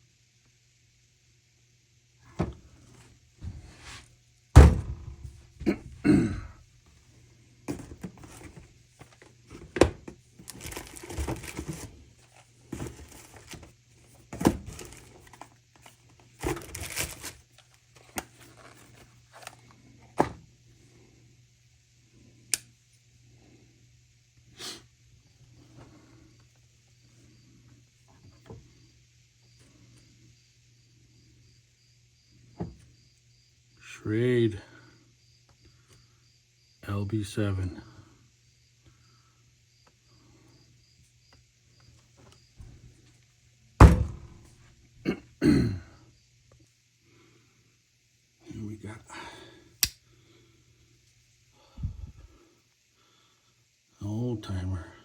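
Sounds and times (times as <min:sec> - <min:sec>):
heavy thunk: 0:04.6 - 0:06.0, 0:43.8 - 0:44.5.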